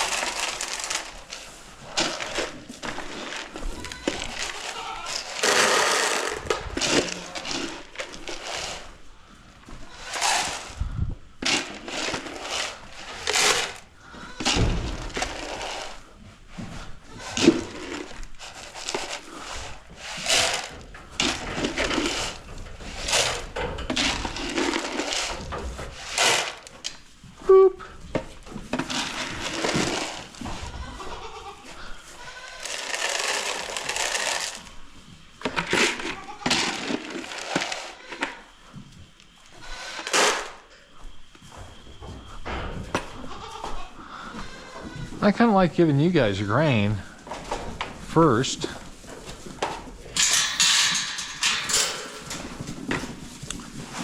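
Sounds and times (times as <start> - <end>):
goats and sheep bleating: 3.6 - 5.4, 30.5 - 32.9, 43.2 - 45.2.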